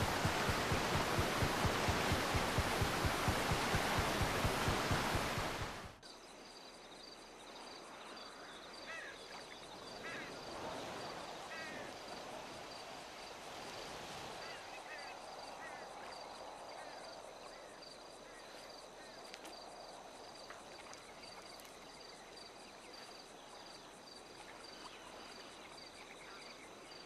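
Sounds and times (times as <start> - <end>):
loud pulsing rushing noise: 0.0 - 5.9.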